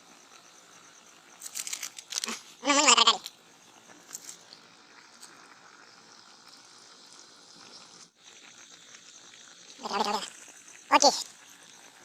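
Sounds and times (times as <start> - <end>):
goat bleating: 2.3 - 3.3, 9.8 - 10.3.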